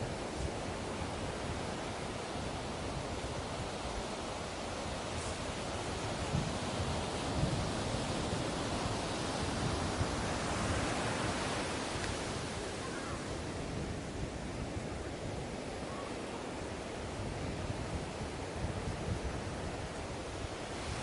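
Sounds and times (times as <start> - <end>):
ocean surf on a beach: 0.0 - 21.0.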